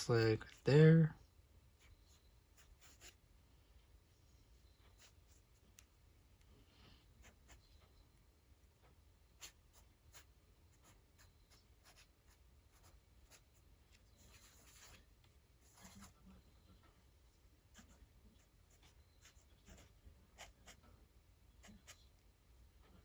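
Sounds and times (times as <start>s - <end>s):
pen scratching on paper: 1.8s - 3.2s, 4.6s - 5.9s, 7.2s - 7.7s, 9.4s - 13.6s, 14.2s - 15.0s, 15.6s - 16.2s, 17.7s - 18.1s, 18.7s - 20.8s, 21.6s - 22.0s.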